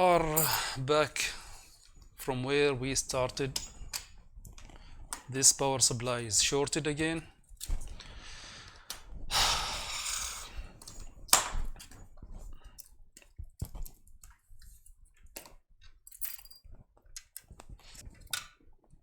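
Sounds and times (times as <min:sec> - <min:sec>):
breathy hiss: 0:08.1 - 0:10.8.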